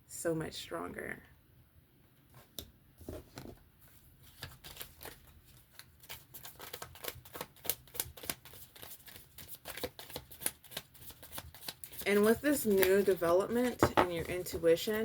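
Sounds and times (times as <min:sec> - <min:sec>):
cards being shuffled: 0:04.2 - 0:15.0.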